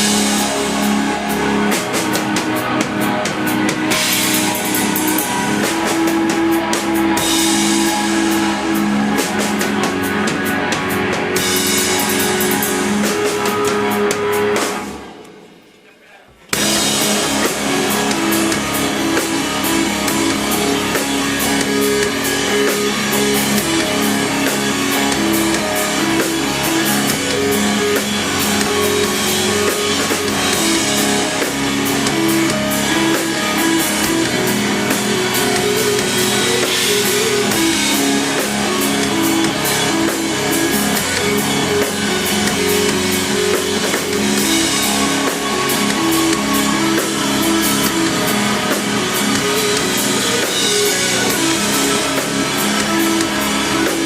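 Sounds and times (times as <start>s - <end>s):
bass guitar: 0.0s - 15.2s, 16.4s - 54.0s
drum kit beat: 0.0s - 15.5s, 16.4s - 54.0s
electric guitars: 0.0s - 15.6s, 16.3s - 54.0s.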